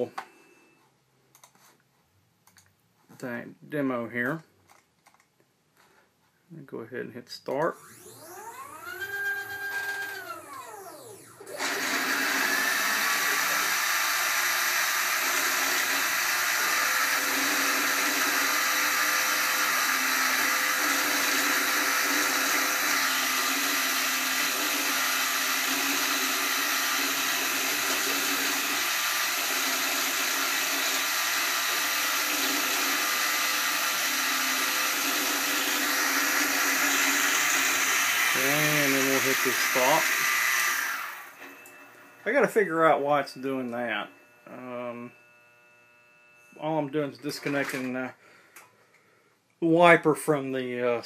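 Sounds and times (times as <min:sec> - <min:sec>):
stepper motors whining: 0:07.8 - 0:42.4
spindle motor running: 0:07.8 - 0:46.5.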